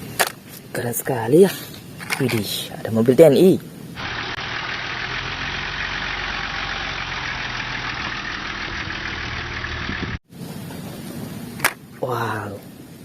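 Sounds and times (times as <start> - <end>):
vehicle engine idling: 3.9 - 10.2.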